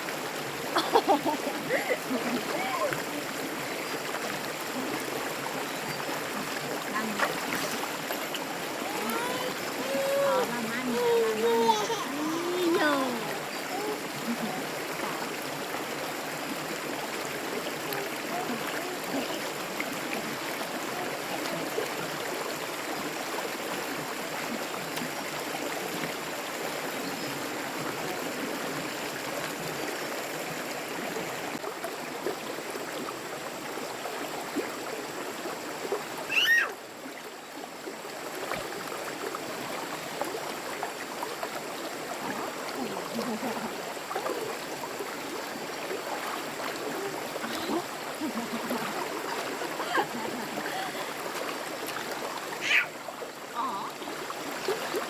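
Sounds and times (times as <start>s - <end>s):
water running: 0.7s - 22.4s, 41.4s - 55.0s.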